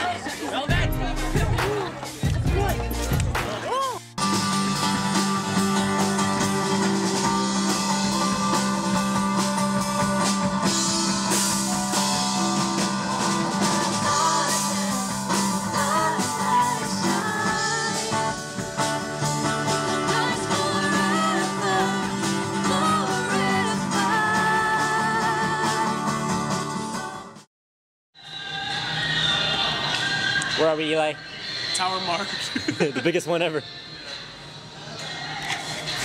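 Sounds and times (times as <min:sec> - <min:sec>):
rock music with guitar: 0:00.8 - 0:27.2
person singing: 0:19.8 - 0:26.1.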